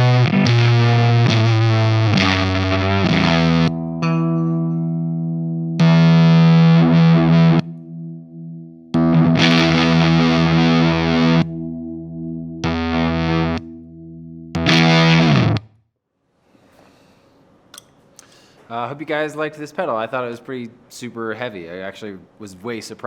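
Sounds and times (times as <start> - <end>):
distorted electric guitar chords: 0.0 - 15.8.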